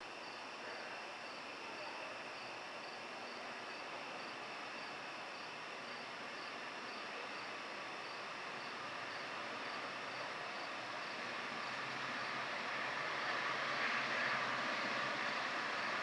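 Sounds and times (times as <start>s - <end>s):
freight train approaching: 10.1s - 16.0s.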